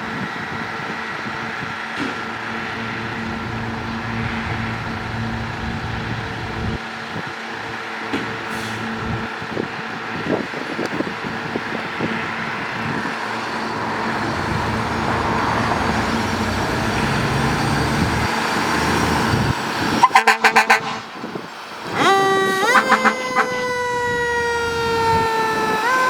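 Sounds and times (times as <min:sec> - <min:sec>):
fire engine engine and road noise: 0:00.0 - 0:26.0
air horn blasts: 0:20.0 - 0:21.1, 0:21.9 - 0:26.0
siren rising to a steady tone: 0:21.8 - 0:26.0.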